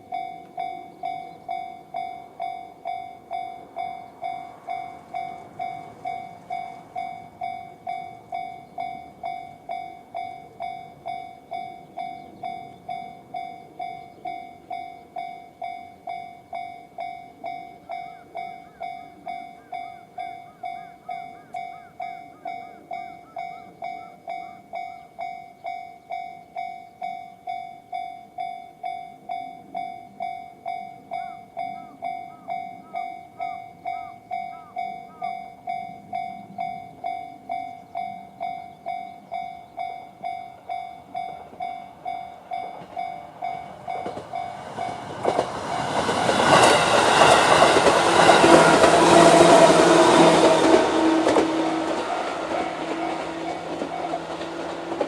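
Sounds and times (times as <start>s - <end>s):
level crossing warning bell: 0.0s - 55.0s.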